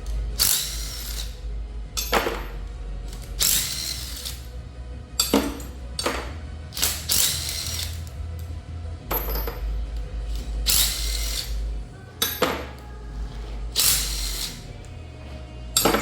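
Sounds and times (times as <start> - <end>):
power tool running: 0.0 - 2.5, 3.1 - 4.6, 5.2 - 8.4, 10.2 - 11.9, 13.2 - 16.0
metallic rattles and clinks: 9.1 - 9.7.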